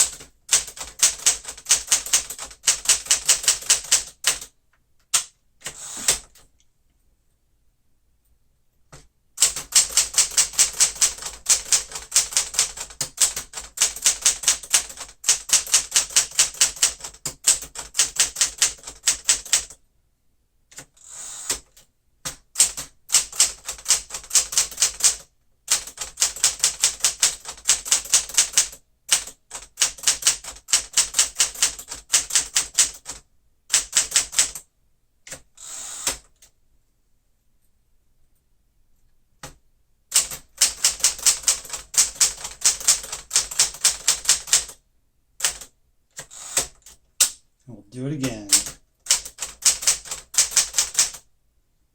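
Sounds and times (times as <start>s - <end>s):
typewriter keys striking: 0.0s - 4.5s, 9.4s - 19.8s, 21.5s - 34.6s, 40.2s - 44.8s, 48.5s - 51.2s
typewriter carriage sliding: 5.6s - 6.4s.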